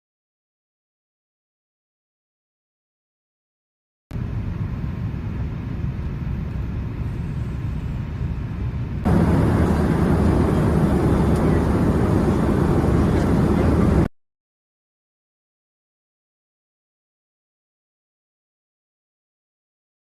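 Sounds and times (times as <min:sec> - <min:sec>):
aircraft noise: 0:04.2 - 0:14.1.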